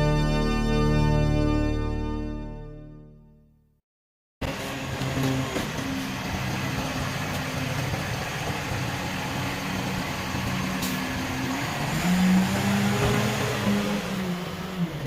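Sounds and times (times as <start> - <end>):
truck diesel engine idling and revving: 4.4 - 15.0.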